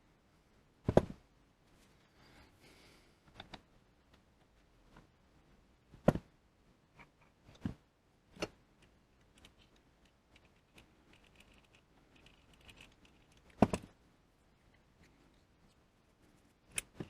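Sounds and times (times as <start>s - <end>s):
metal parts clicking and knocking: 8.4s - 13.9s, 16.7s - 17.0s.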